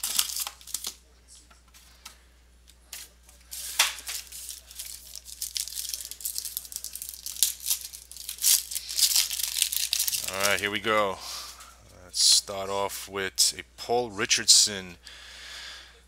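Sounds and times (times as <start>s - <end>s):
wrapper tearing and crinkling: 0.0s - 1.0s, 3.5s - 10.7s.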